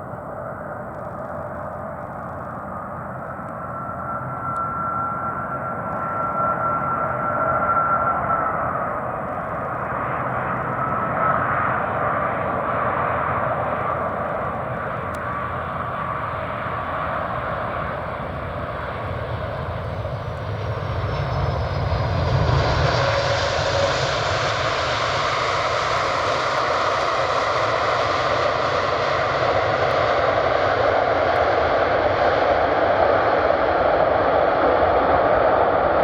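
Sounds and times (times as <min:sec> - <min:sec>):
jet engines roaring: 0:00.0 - 0:36.0.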